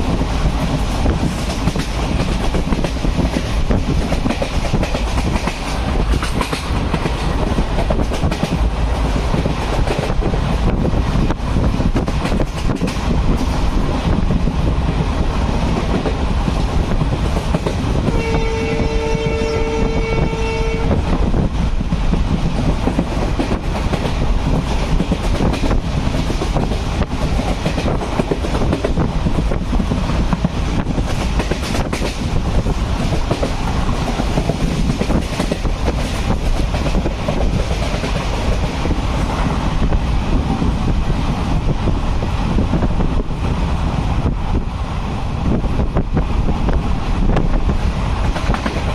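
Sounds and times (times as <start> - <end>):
train wheels clattering on rails: 0.0 - 44.7, 45.4 - 48.9
train horn blast: 18.0 - 21.0.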